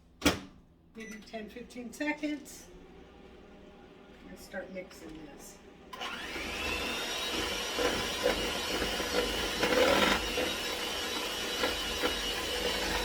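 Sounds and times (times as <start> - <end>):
electric hand mixer whining: 5.9 - 13.0.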